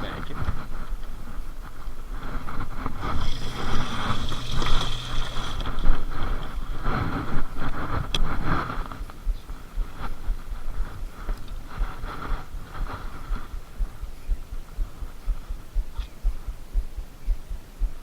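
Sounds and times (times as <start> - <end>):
wind: 0.0 - 18.0
boat motor hum: 2.0 - 10.3
water sounds: 2.7 - 7.8.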